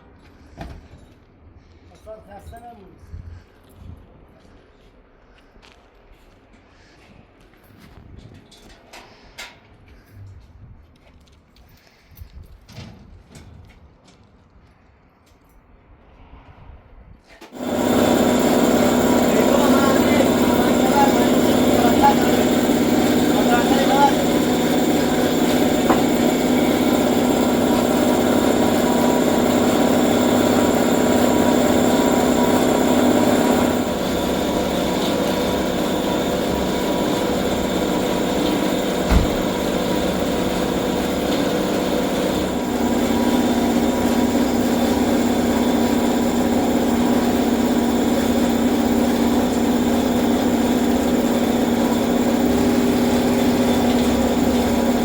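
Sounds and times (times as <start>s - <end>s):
car engine running: 17.6s - 55.0s.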